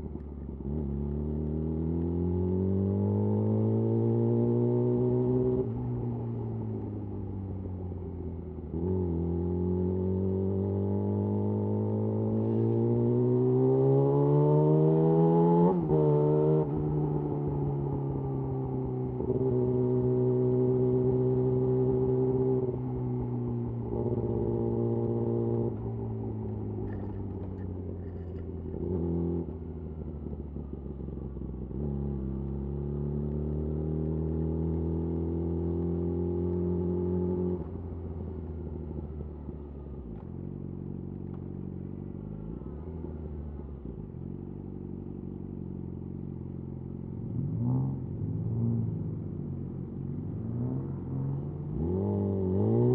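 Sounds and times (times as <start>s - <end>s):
motorcycle engine revving: 8.7s - 40.0s, 45.7s - 52.9s.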